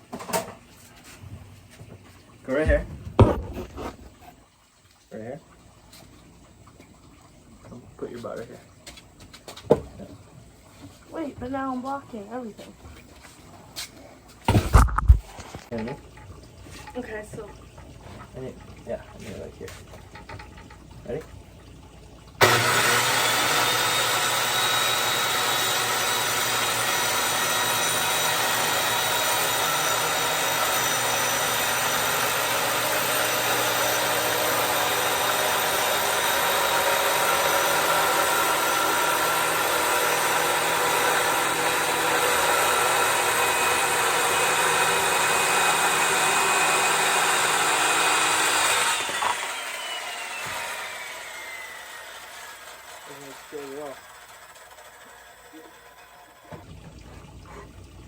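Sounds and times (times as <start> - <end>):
power saw cutting wood: 2.5 - 4.2, 22.4 - 56.7.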